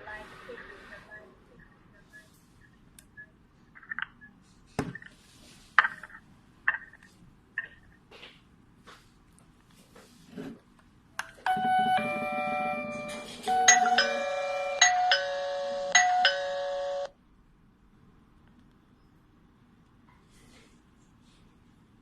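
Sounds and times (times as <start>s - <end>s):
doorbell chime melody: 11.5s - 17.1s.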